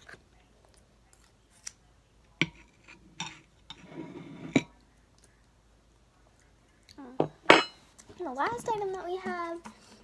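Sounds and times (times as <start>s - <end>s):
tableware clinking and knocking: 2.4s - 4.8s, 7.2s - 7.8s.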